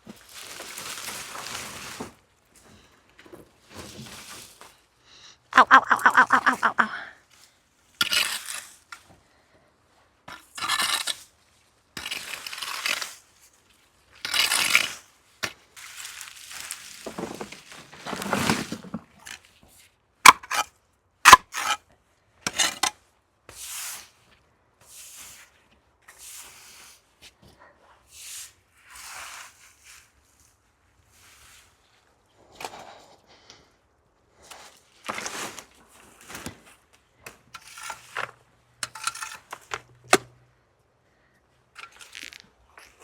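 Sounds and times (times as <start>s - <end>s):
bramble stems rustling and tearing: 0.1s - 2.2s, 15.8s - 19.0s, 41.8s - 43.0s.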